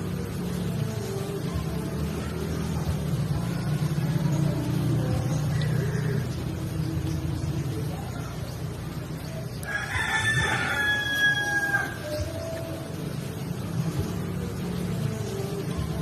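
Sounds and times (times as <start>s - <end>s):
rooster crowing: 9.6s - 12.2s.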